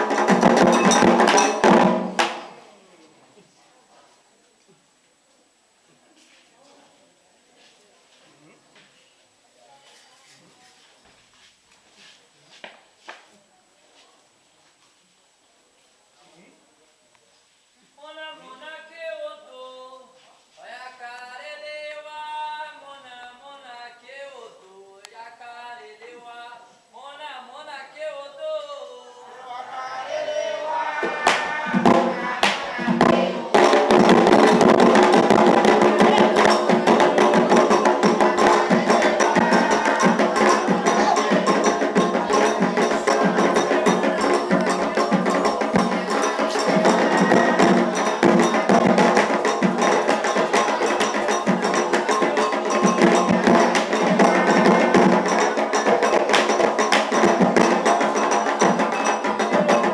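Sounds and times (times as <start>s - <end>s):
hand drums: 0.0s - 2.6s, 31.0s - 59.9s
struck bell: 36.1s - 59.9s.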